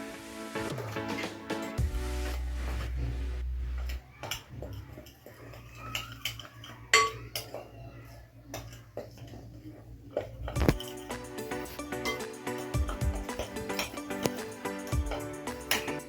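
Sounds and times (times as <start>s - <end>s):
metal spoon clinking against bowl: 4.2s - 16.0s.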